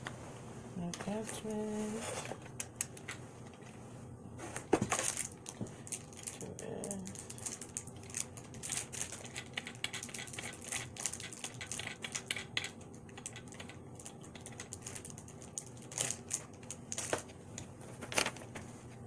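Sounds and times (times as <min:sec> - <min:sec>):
plastic parts clicking and rattling: 0:04.8 - 0:18.6.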